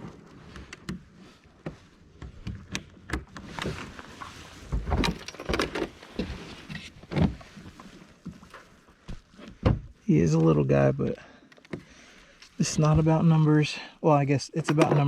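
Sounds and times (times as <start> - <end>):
fishing gear clicks and knocks: 5.0 - 6.3, 14.5 - 15.0.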